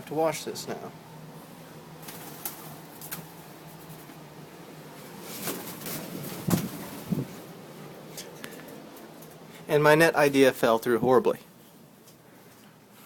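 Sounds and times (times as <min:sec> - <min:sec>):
steady low hum: 0:00.0 - 0:13.0
rustling: 0:04.9 - 0:07.5.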